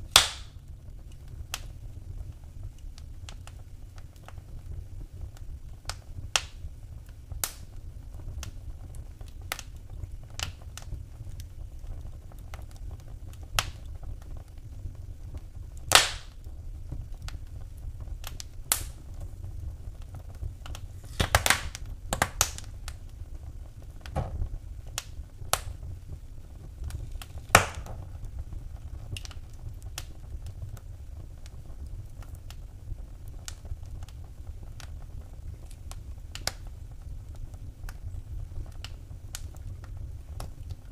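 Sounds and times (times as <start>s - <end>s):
low rumble of flames: 0.0s - 40.9s
wood fire crackling: 0.0s - 40.9s.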